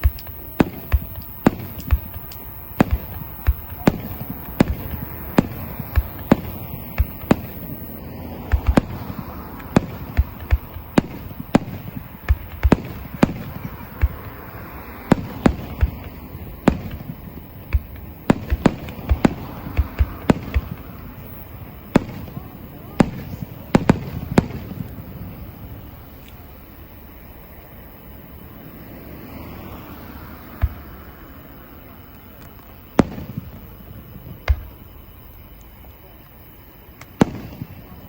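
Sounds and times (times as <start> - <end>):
fireworks bangs: 0.0 - 27.2, 29.0 - 38.0.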